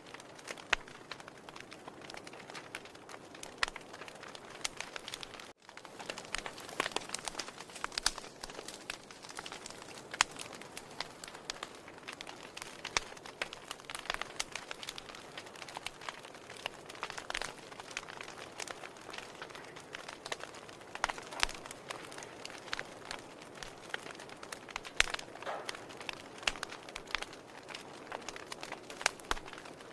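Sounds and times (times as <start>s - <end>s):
fire hissing softly: 0.0s - 29.9s
logs crackling and popping: 0.0s - 29.9s.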